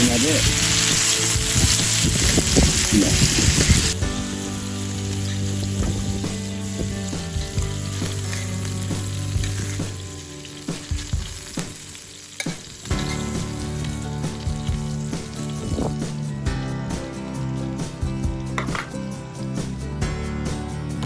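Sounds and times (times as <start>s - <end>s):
utensil scraping a pan: 0.0s - 4.0s
steak sizzling in a frying pan: 0.0s - 19.8s.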